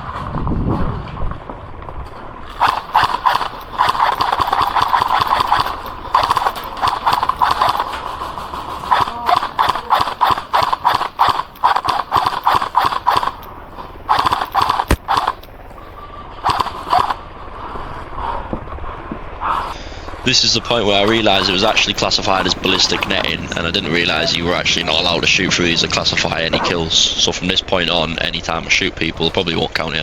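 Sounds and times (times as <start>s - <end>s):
airsoft gun firing full-auto bursts: 2.5s - 15.8s, 16.4s - 17.2s, 20.8s - 25.2s.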